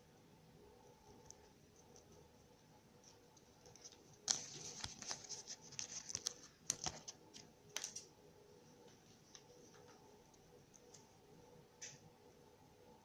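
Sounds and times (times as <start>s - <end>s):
crinkles and sharp clicks: 0.8s - 2.3s, 3.0s - 8.2s, 8.8s - 11.2s.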